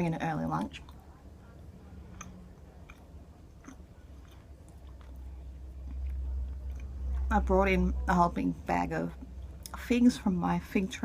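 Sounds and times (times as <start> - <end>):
close-up chewing: 0.4 - 7.5.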